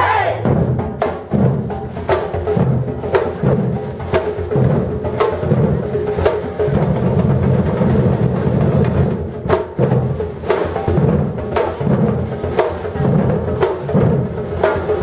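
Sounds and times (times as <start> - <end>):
steady drum pattern: 0.0 - 5.6.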